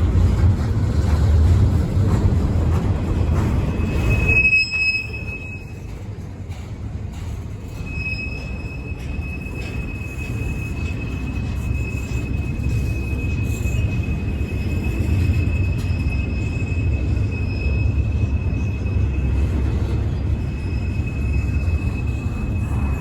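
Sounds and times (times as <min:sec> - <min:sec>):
freight train cars rumbling: 0:00.0 - 0:23.0
high-pitched wheel squeal: 0:03.5 - 0:06.0, 0:07.6 - 0:23.0.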